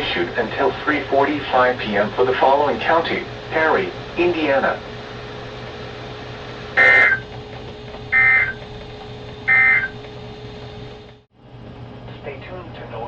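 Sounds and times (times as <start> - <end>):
faint receiver hum: 0.0 - 11.2
warbling digital data tone: 6.8 - 7.3, 8.1 - 8.6, 9.5 - 10.0.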